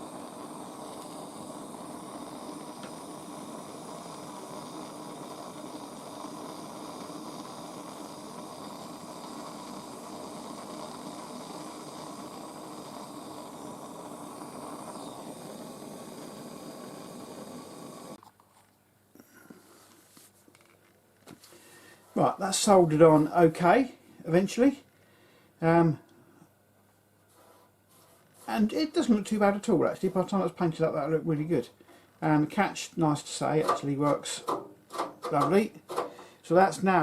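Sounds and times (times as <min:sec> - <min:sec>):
blowtorch flame hissing: 0:00.0 - 0:18.2, 0:21.6 - 0:23.7, 0:27.3 - 0:31.5, 0:32.4 - 0:37.0.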